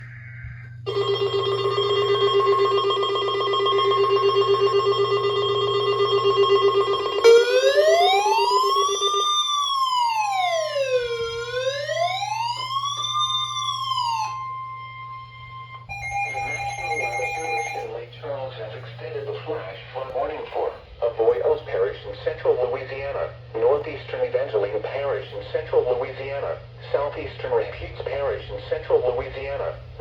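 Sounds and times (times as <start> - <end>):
siren pulsing and wailing: 0.0 - 17.9
steady high alert tone: 0.0 - 18.0.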